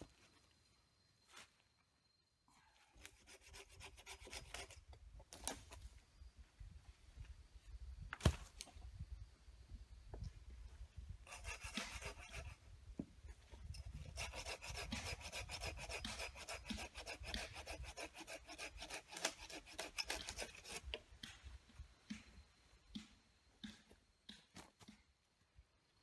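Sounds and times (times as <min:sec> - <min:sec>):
rapid rasping strokes: 0:13.8 - 0:21.0.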